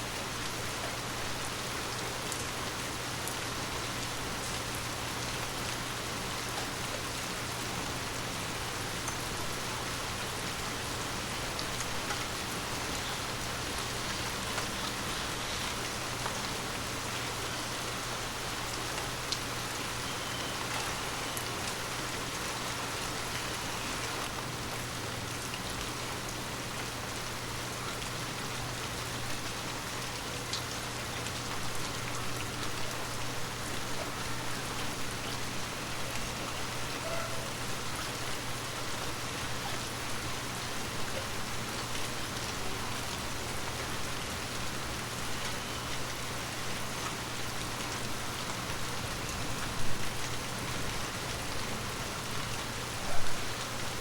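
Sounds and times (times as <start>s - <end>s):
rain falling on leaves: 0.0s - 54.0s.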